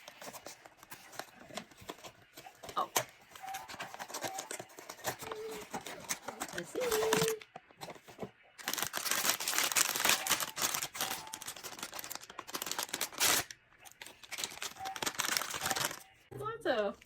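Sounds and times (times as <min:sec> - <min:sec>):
rustling: 0:00.0 - 0:16.1
packaging crinkling: 0:00.0 - 0:16.2
packaging ripping: 0:03.6 - 0:07.4, 0:08.6 - 0:16.0.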